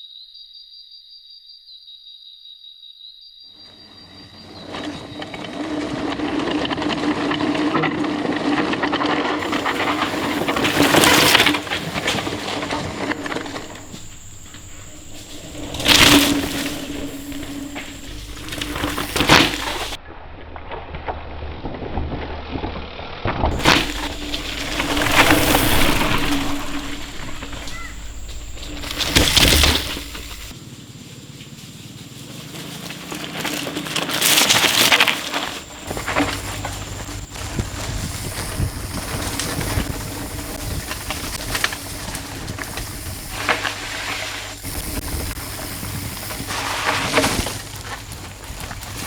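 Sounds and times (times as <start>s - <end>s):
bike tyres crunching on dirt: 4.5s - 20.0s, 23.4s - 49.0s
bike clicks and rattles: 5.4s - 20.0s, 23.5s - 30.6s, 32.2s - 49.0s.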